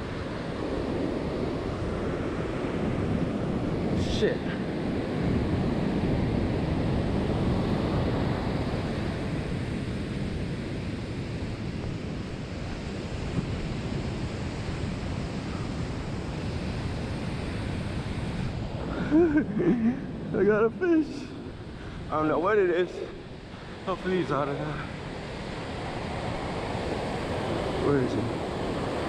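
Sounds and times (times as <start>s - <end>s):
ocean surf rushing onto beach: 0.0s - 29.0s
wind on microphone: 0.0s - 29.0s.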